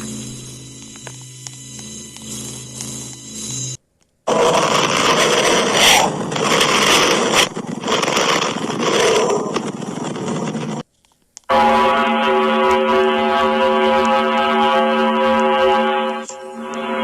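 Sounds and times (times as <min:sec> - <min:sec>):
rough rushing noise with crackle: 0:04.3 - 0:10.8.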